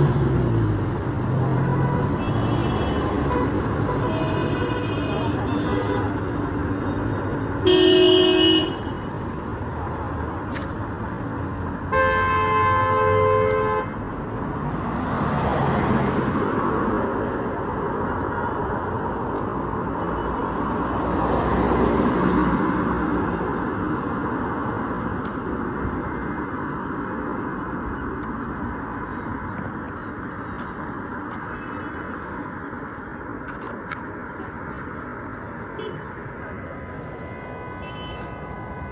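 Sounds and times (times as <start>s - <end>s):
road traffic passing: 0.0s - 38.9s
car horn blasts: 1.6s - 6.1s, 7.6s - 9.0s, 11.9s - 14.0s, 35.8s - 36.1s, 37.2s - 38.9s.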